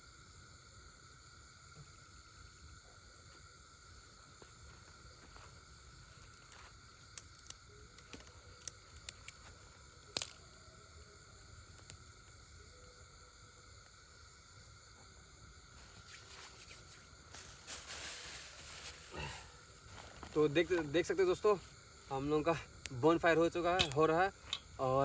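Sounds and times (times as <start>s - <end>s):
crickets chirping: 0.0s - 25.0s.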